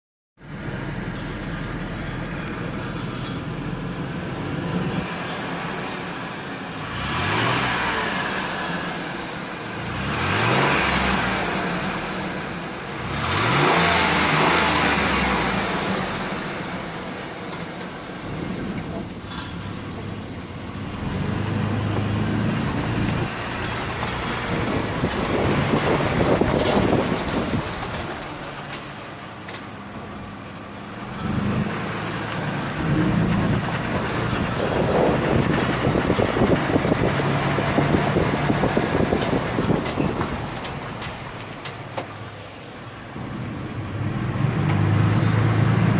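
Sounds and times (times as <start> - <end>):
van engine idling and revving: 0.4 - 45.9
exhaust heat shield rattle: 17.4 - 29.8, 31.1 - 42.7
engine knocking: 32.8 - 42.1.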